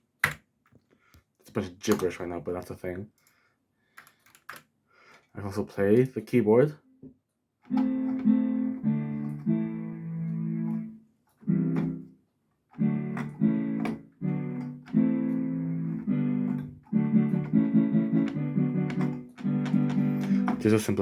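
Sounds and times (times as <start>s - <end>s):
instrument playing chords: 7.7s - 10.9s, 12.8s - 20.6s.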